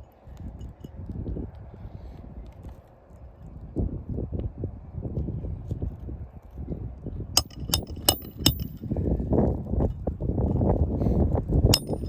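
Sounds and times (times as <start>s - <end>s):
metallic clinks of roofing tools: 7.4s - 8.9s, 11.7s - 12.0s.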